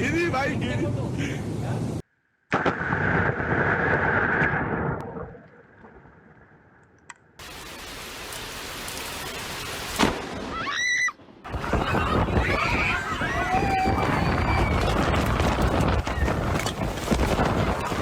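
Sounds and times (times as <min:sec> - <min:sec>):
steady rain: 0:07.4 - 0:10.1
thunder crack and rumble: 0:11.4 - 0:18.0.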